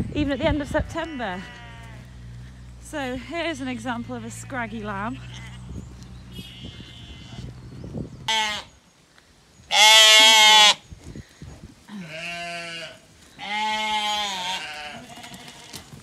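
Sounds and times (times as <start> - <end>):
sheep bleating: 0.4 - 2.2, 3.1 - 7.5, 8.3 - 8.7, 9.7 - 10.8, 11.9 - 15.8.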